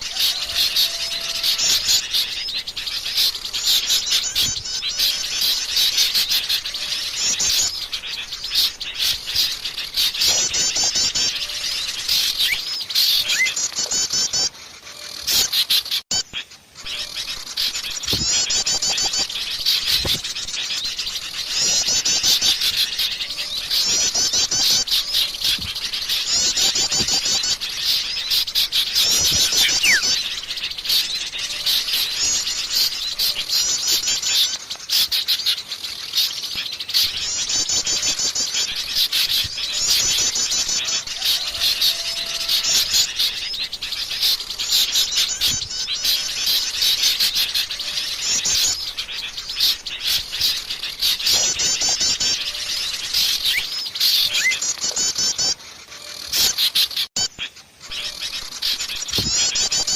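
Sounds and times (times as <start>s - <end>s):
birds chirping: 0.0s - 59.9s
bird falling whistle: 29.2s - 30.2s.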